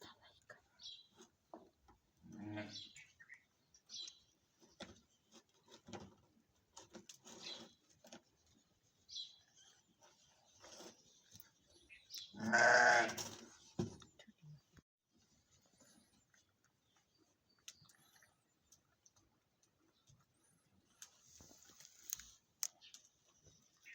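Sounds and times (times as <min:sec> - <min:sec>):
loud animal vocal sound: 0:12.3 - 0:13.3.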